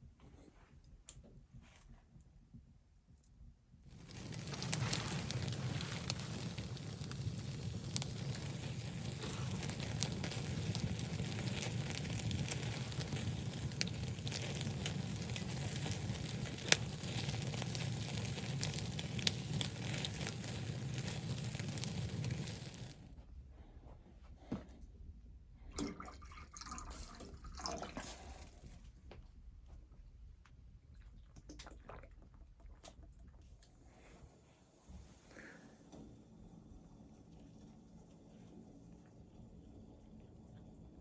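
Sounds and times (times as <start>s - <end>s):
fire pops: 3.9s - 23.1s
wood fire crackling: 3.9s - 23.1s.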